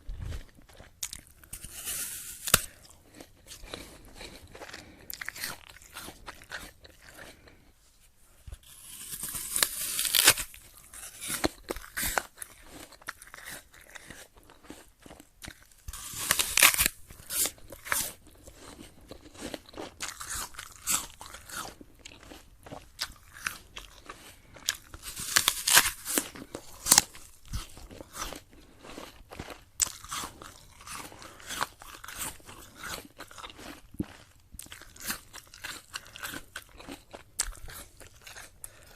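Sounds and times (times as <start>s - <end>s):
person crunching an apple: 0.1s - 7.8s, 8.5s - 38.9s.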